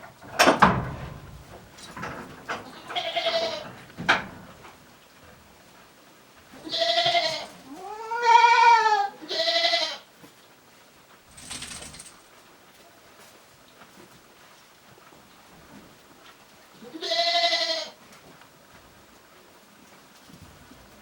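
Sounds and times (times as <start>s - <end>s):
goats bleating: 2.6s - 3.8s, 6.6s - 10.0s, 16.8s - 18.0s.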